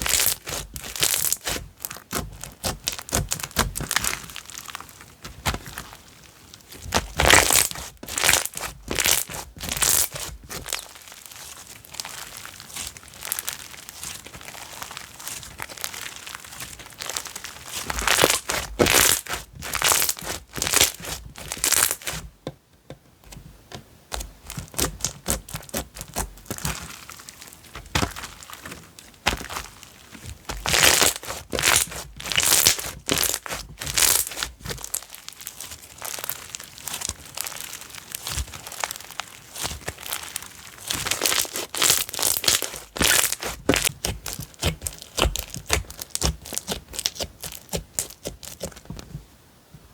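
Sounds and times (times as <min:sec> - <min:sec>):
slime crackling pops: 0:00.0 - 0:04.2, 0:30.5 - 0:48.8.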